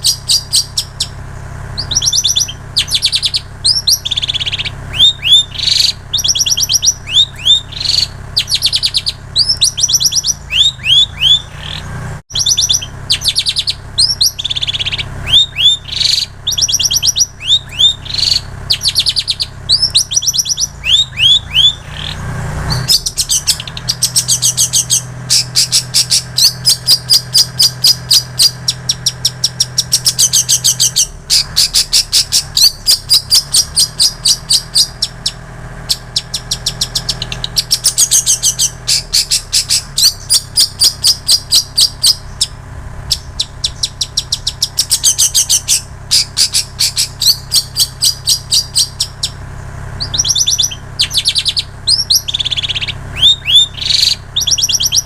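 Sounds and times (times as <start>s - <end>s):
bird singing: 0.0s - 55.0s
low steady hum: 0.0s - 55.0s.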